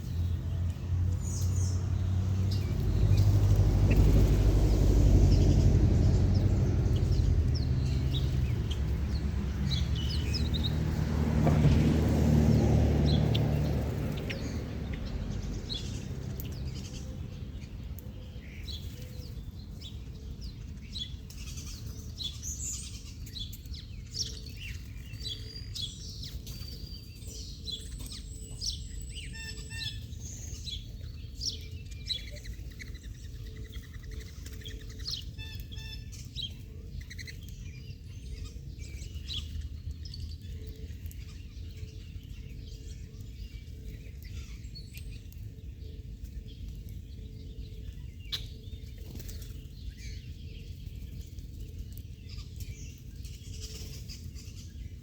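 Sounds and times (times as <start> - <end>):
low rumble: 0.0 - 17.4
small birds chirping: 0.0 - 55.0.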